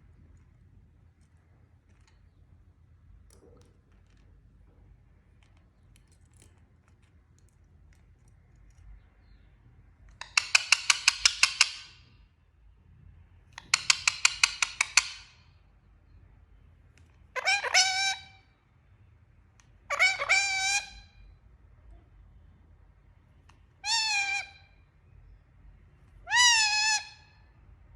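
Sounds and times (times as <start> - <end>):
parrot calling: 17.3 - 18.5, 19.9 - 21.2, 23.8 - 24.8, 26.2 - 27.4.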